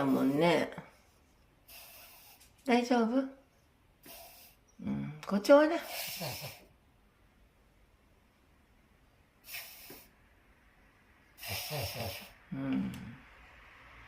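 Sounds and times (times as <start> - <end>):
dog sneezing: 4.0 - 4.6, 5.8 - 6.7, 9.4 - 10.1, 11.4 - 12.4.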